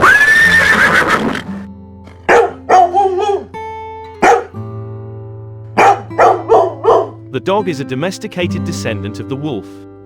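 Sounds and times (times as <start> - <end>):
guitar music: 0.7 - 10.0
dog barking: 2.2 - 3.5, 4.2 - 4.6, 5.8 - 7.2.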